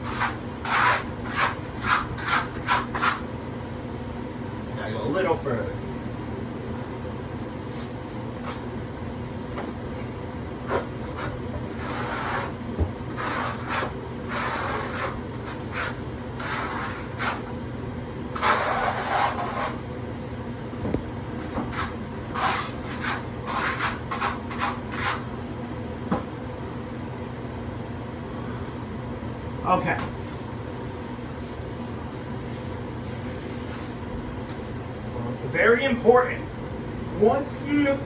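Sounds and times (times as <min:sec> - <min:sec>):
trowel scraping mortar: 0:00.0 - 0:03.2, 0:10.7 - 0:17.4, 0:18.4 - 0:19.8, 0:21.4 - 0:25.2
steady low hum: 0:00.0 - 0:38.0.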